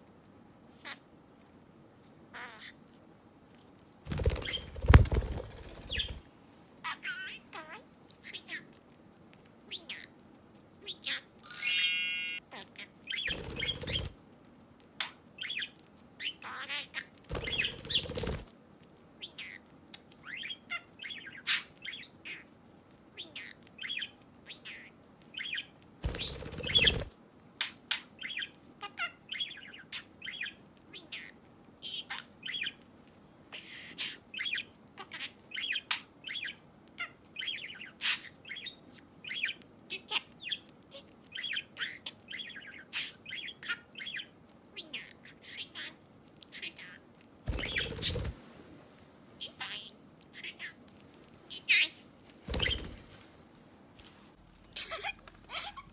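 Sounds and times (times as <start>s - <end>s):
rustling noise: 53.0s - 55.9s
budgerigar chirping and chattering: 54.4s - 55.9s.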